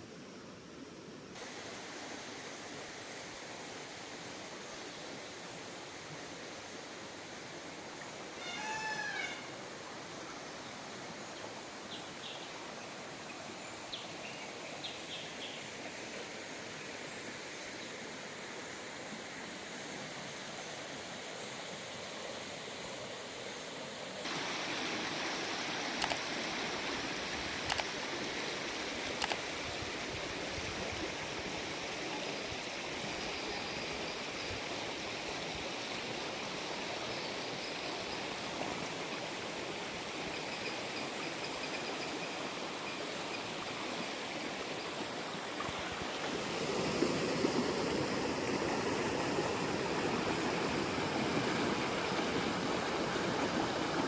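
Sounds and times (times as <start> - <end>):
river water flowing: 0.0 - 54.0
short sharp clicks: 26.0 - 26.3, 27.7 - 27.9, 29.2 - 29.4.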